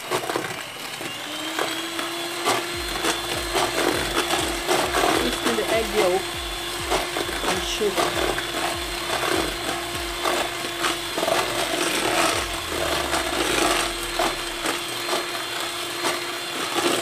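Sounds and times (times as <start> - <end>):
electric mixer motor hum: 0.0 - 17.0.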